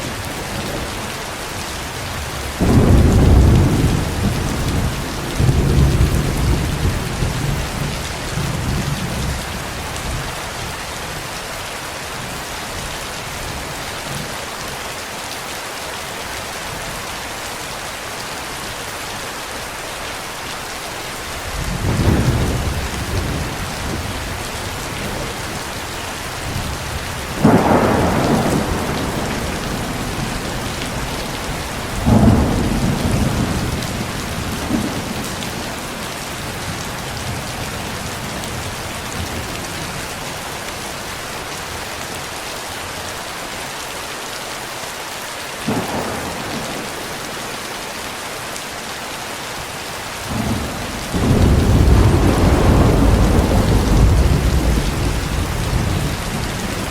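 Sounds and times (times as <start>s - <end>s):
heavy rain: 0.0s - 56.9s
rolling thunder: 2.2s - 10.2s, 21.5s - 38.6s, 45.7s - 47.4s, 50.2s - 56.9s.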